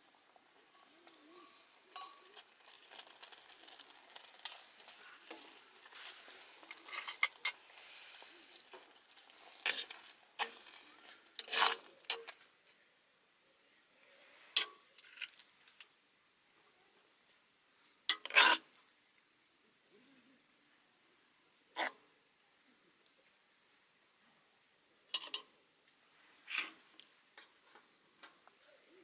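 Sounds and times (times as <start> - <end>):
metal clinks and scrapes: 4.5 - 7.6
short hiss: 7.6 - 8.7.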